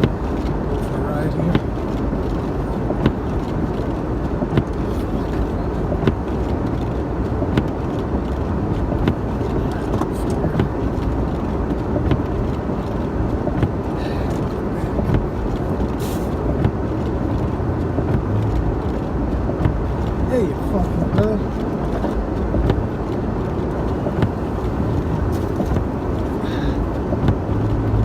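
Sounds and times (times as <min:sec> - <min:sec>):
car engine rumbling: 0:00.0 - 0:28.0.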